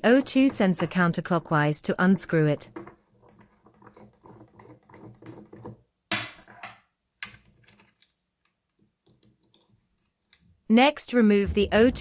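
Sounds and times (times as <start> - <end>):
small clicks and scrapes: 2.6 - 5.8, 7.2 - 10.6.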